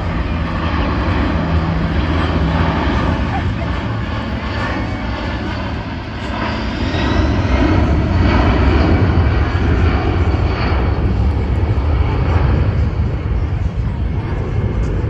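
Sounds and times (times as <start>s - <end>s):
aircraft engine flying past: 0.0s - 15.0s.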